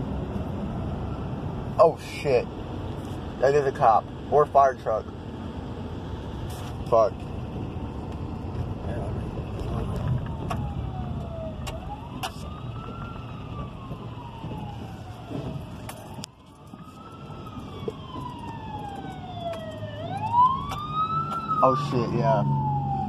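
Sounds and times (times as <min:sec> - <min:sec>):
vehicle rumble: 0:00.0 - 0:23.0
siren wailing: 0:09.6 - 0:23.0.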